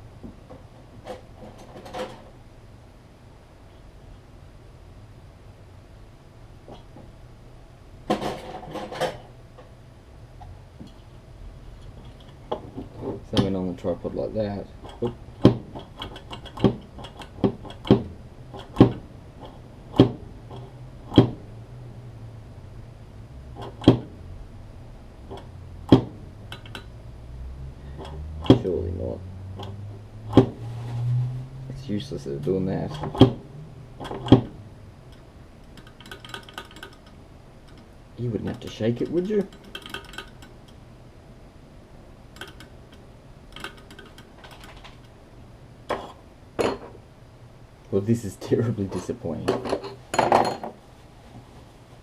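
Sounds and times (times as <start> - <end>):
small metal parts clicking and rattling: 35.1 - 37.9, 38.5 - 40.8, 42.4 - 45.1.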